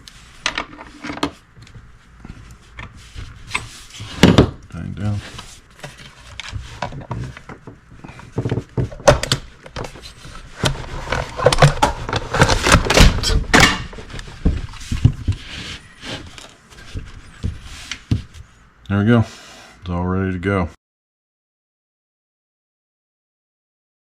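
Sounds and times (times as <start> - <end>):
clicks knocks and scraping: 5.2 - 18.4.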